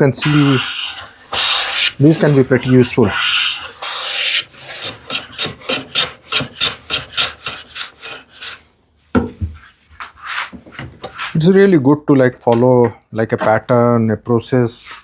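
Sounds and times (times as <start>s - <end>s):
hand tool rasping on wood: 0.0s - 8.6s.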